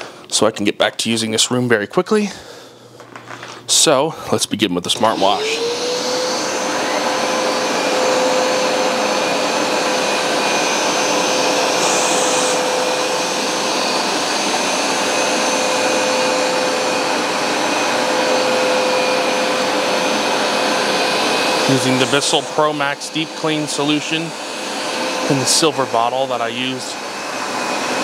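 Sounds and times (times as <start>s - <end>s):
carpet cleaner motor whine: 5.0s - 28.0s.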